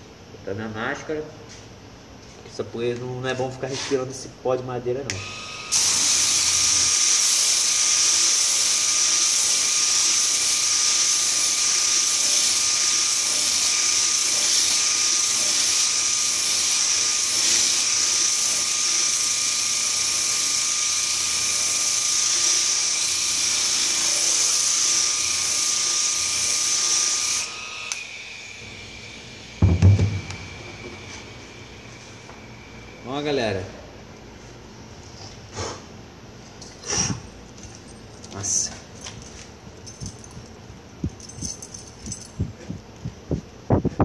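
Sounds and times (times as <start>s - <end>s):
sander motor whine: 5.1s - 8.1s, 8.8s - 34.3s
sandpaper disc sanding wood: 5.8s - 27.5s.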